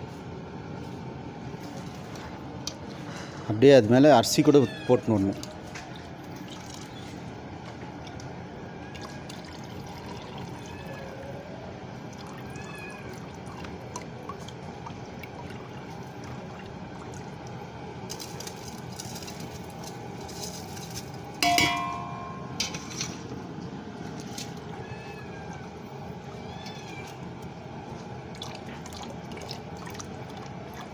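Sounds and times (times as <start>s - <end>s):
water boiling in a pot: 6.1s - 22.1s, 23.2s - 30.9s
loud ringing clank: 21.4s - 22.9s.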